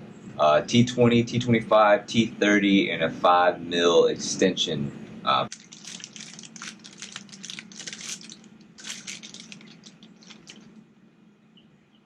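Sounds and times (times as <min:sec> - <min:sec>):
faint steady hum: 0:00.0 - 0:12.0
plastic case rustling and clicking: 0:05.5 - 0:10.7.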